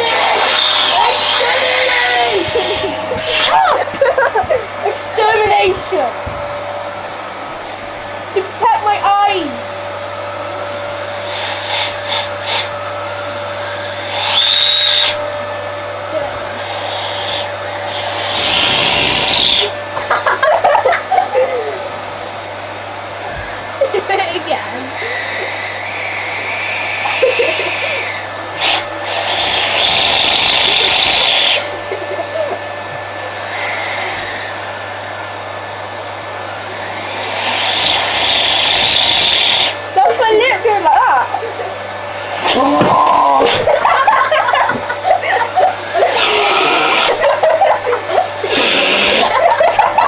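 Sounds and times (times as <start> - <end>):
hissy bursts of suction: 0.0 - 6.5, 11.1 - 15.4, 16.5 - 19.8, 25.0 - 32.1, 36.0 - 40.0, 42.1 - 44.2, 45.9 - 50.0
vacuum cleaner motor humming: 0.0 - 50.0
high-pitched whistle: 14.2 - 15.2.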